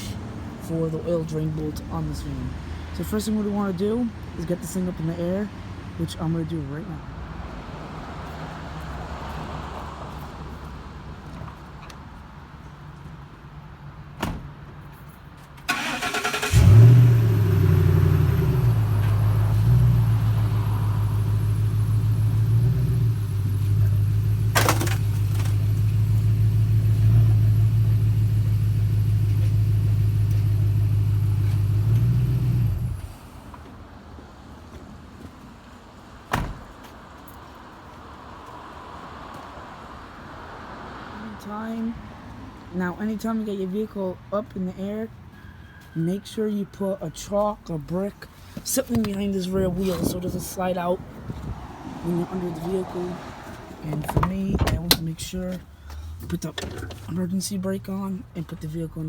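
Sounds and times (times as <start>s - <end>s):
starter cranking engine: 15.7s - 17.0s
van engine running: 15.7s - 33.7s.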